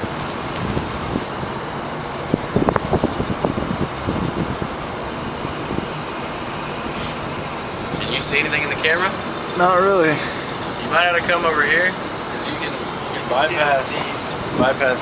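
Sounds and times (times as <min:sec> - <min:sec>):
crackles: 0:00.0 - 0:01.6
steady background rush: 0:00.0 - 0:15.0.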